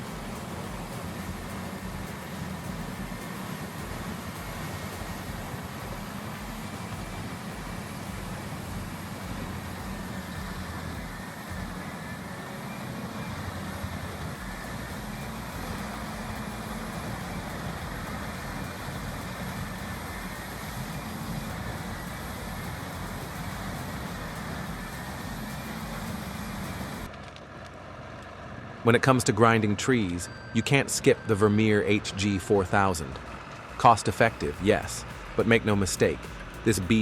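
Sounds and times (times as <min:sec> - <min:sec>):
diesel machinery running: 0:00.0 - 0:37.0.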